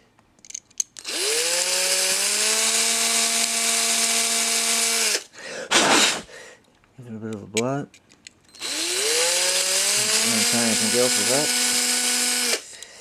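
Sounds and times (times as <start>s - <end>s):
electric drill whining: 1.0s - 5.3s, 8.5s - 12.8s.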